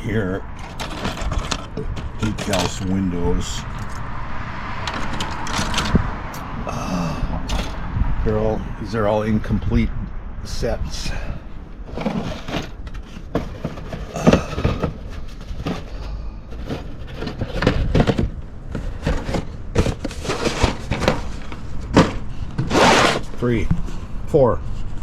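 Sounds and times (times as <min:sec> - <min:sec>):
plastic parts rustling and clicking: 0:00.5 - 0:04.0, 0:04.8 - 0:06.1, 0:07.4 - 0:07.8, 0:11.8 - 0:24.0.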